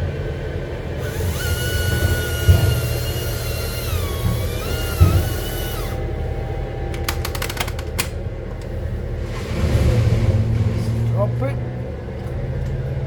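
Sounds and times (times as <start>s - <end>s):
high motor whine: 0.0s - 9.4s
heavy engine rumbling: 0.0s - 13.0s
rattle of sharp clicks: 6.9s - 8.7s.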